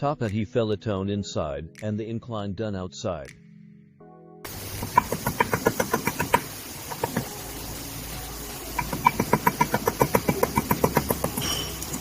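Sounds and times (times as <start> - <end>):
hammer tapping on metal: 4.7 - 7.3, 8.8 - 12.0.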